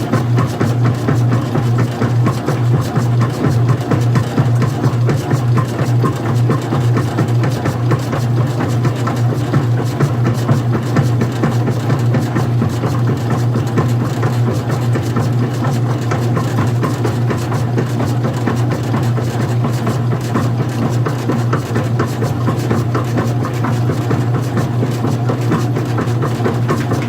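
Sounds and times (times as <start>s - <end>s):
washing machine motor hum: 0.0s - 27.0s
washing machine rattling: 0.0s - 27.0s.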